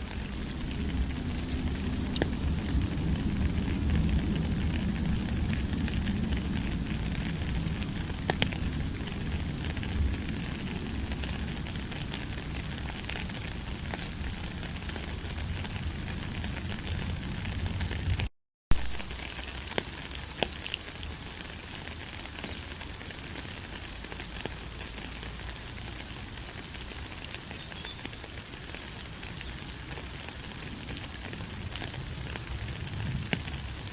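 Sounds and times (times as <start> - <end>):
sharp raindrop clicks: 0.0 - 33.9
steady rain falling: 0.0 - 33.9
low rumble: 0.2 - 11.5.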